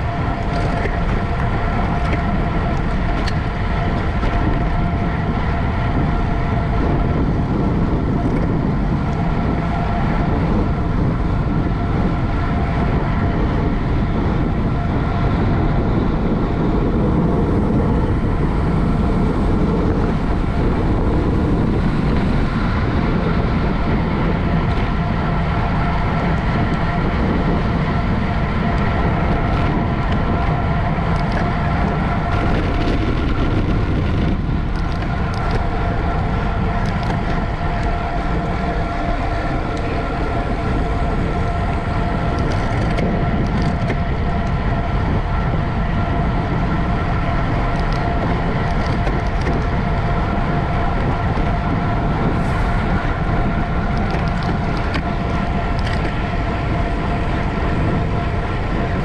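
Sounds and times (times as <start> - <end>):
steady whine: 0.0 - 59.0
wind rushing over microphone: 0.0 - 59.0.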